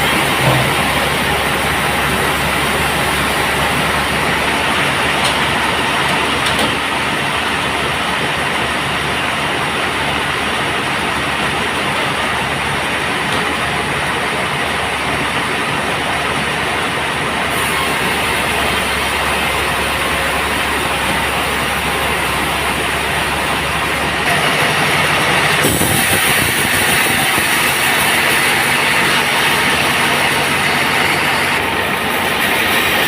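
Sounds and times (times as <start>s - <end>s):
band saw sawing log: 0.0s - 6.9s, 24.3s - 33.0s.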